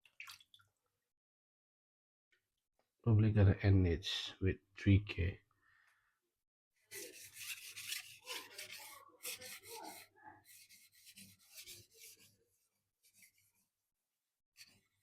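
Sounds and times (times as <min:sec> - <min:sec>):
knife rasping on sharpening stone: 0:06.9 - 0:12.2.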